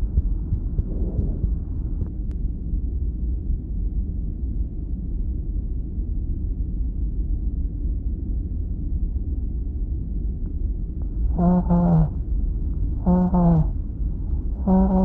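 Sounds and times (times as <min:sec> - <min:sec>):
stethoscope low rumble: 0:00.0 - 0:02.4, 0:11.0 - 0:15.0.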